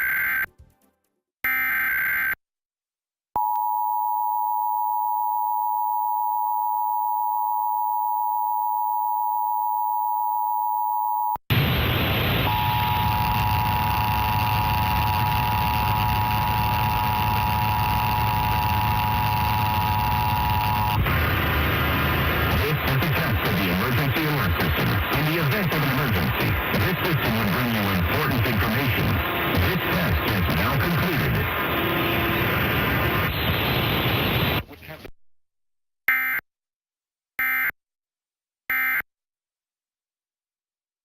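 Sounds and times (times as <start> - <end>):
two-tone alarm: 0.0 - 0.5
loud hiss with low hum: 11.5 - 34.8.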